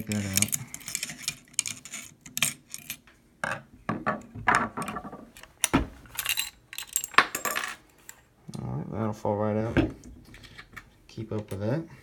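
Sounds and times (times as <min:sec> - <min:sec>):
metal parts clicking and scraping: 0:00.0 - 0:03.1, 0:04.8 - 0:08.2.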